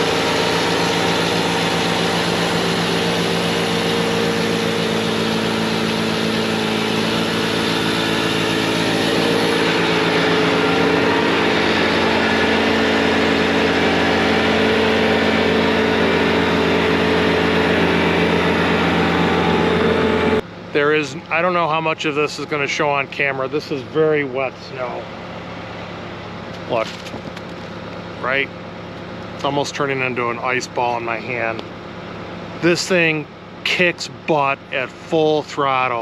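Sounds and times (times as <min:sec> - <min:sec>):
snowblower through wet snow: 0:00.0 - 0:20.4
diesel engine at full throttle: 0:00.0 - 0:36.0.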